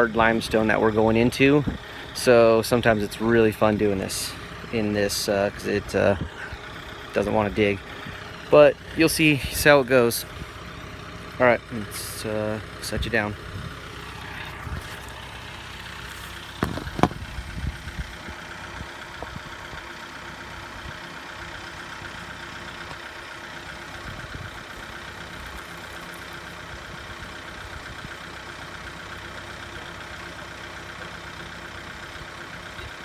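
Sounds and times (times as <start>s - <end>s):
tractor diesel engine running: 0.0s - 33.0s
sharp knocks: 16.6s - 17.2s.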